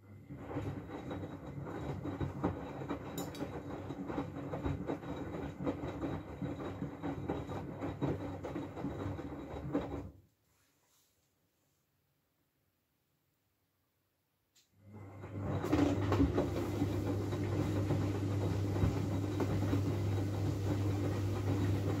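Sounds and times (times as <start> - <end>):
washing machine motor hum: 0.0 - 10.2, 14.8 - 22.0
water and laundry sloshing in drum: 15.3 - 22.0.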